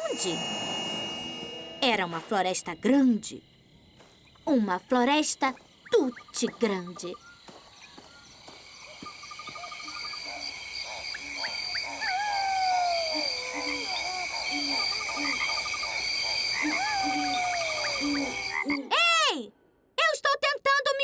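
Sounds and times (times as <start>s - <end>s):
insect drone: 0.0s - 18.9s
long falling whistled call: 9.1s - 18.6s.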